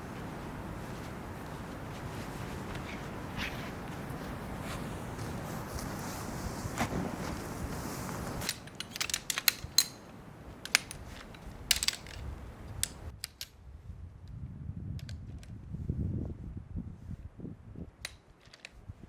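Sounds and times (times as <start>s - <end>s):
clicks and knocks from handling: 8.4s - 13.5s.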